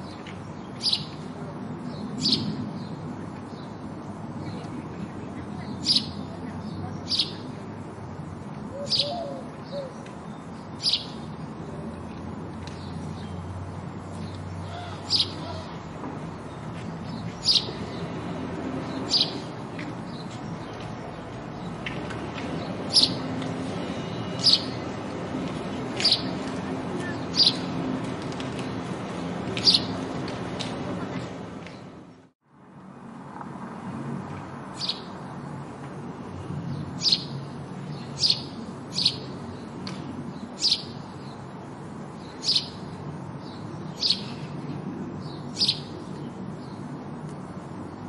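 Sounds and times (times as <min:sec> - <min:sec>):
sparrow chirping: 0:00.0 - 0:01.3, 0:01.9 - 0:03.8, 0:04.4 - 0:07.5, 0:08.7 - 0:11.4, 0:14.1 - 0:15.7, 0:16.4 - 0:18.2, 0:18.8 - 0:20.9, 0:22.6 - 0:25.0, 0:25.8 - 0:27.9, 0:29.6 - 0:30.0, 0:34.7 - 0:35.2, 0:36.6 - 0:41.4, 0:42.2 - 0:44.6, 0:45.2 - 0:46.9.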